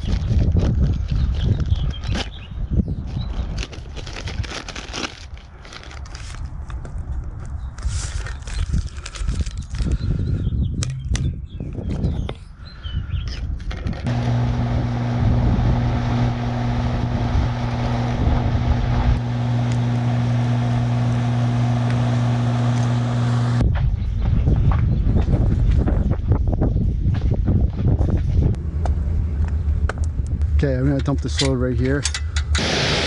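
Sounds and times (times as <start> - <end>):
wind on microphone: 0.0 - 4.5, 6.3 - 19.2, 23.6 - 30.6
engine humming: 14.0 - 23.6, 28.0 - 33.0.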